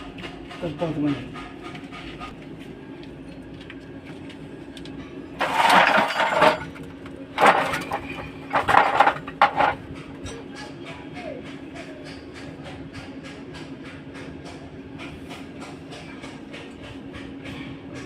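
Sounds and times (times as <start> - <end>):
metal tools clattering and scraping: 5.4 - 10.6.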